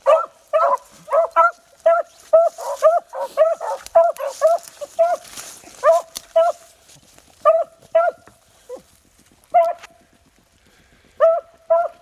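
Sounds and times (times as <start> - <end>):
dogs barking: 0.0 - 6.7, 7.4 - 8.8, 9.5 - 9.9, 11.2 - 12.0.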